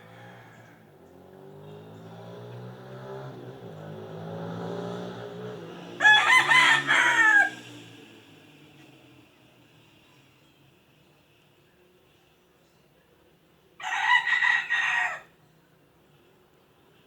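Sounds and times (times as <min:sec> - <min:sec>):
rooster crowing: 0:00.0 - 0:00.8, 0:06.0 - 0:07.7, 0:13.8 - 0:15.3.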